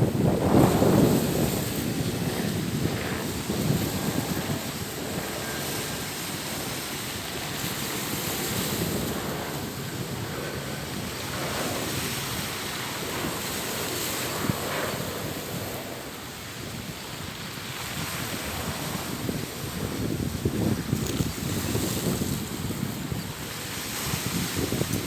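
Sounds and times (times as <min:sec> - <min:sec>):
sea surf on shore: 0:00.0 - 0:25.0
wind buffeting microphone: 0:00.0 - 0:25.0.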